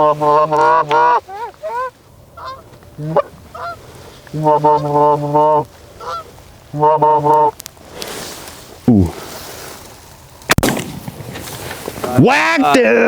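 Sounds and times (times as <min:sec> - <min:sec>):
goose call clucking honks: 0:00.0 - 0:07.6
goose call rising honks: 0:00.0 - 0:07.6.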